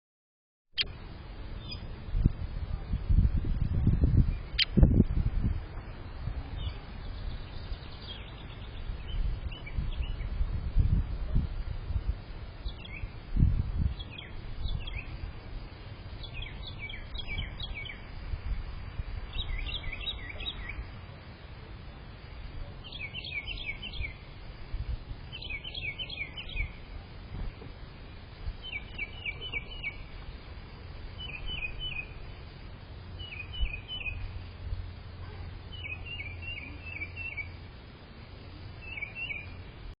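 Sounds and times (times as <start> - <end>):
bird chirping in bursts: 1.6 - 1.9, 4.1 - 4.9, 6.5 - 10.4, 12.6 - 13.2, 13.8 - 18.2, 19.2 - 21.0, 22.2 - 24.4, 25.2 - 26.9, 28.5 - 30.2, 31.0 - 37.7, 38.6 - 39.7.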